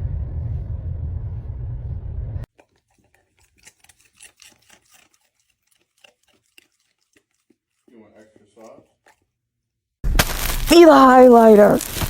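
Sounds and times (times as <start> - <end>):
loud low rumbling: 0.0 - 2.5.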